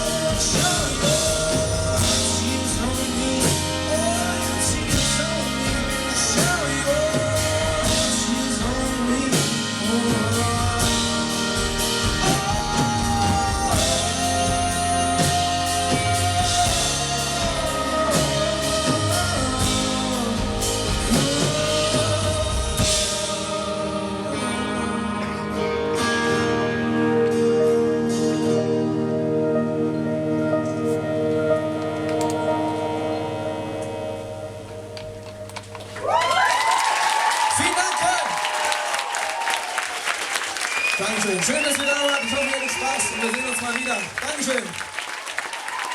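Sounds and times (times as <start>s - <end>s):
drum kit: 0.0s - 24.5s
wordless singing: 0.0s - 26.7s, 30.2s - 36.0s
guitar: 0.0s - 39.4s.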